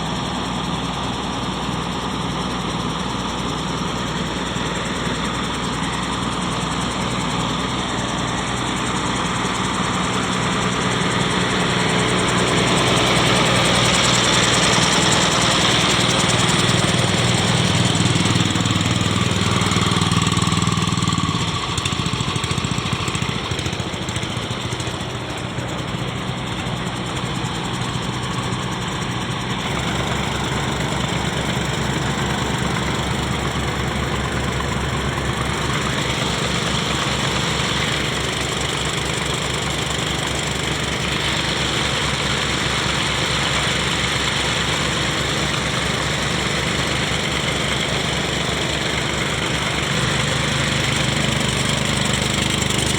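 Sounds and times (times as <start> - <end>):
diesel water pump engine running: 0.0 - 52.9.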